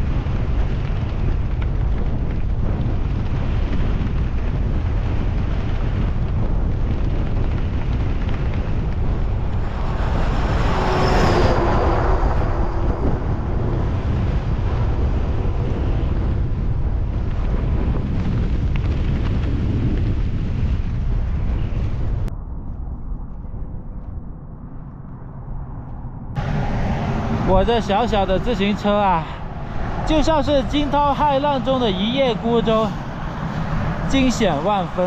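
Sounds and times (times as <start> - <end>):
wind buffeting microphone: 0.0 - 35.0
passing vehicle hum and hiss: 9.3 - 15.9, 26.2 - 35.0.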